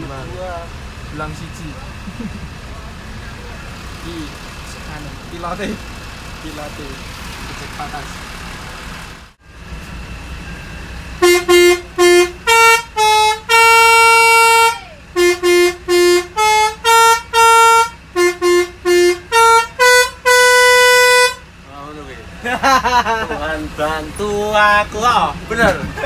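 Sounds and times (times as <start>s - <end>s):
low engine idle: 0.0s - 26.0s
bus horn playing a melody: 11.0s - 21.6s.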